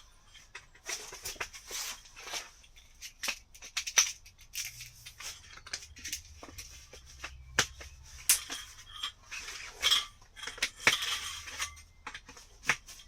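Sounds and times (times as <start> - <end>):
metal cookware clinking: 6.9 - 13.0.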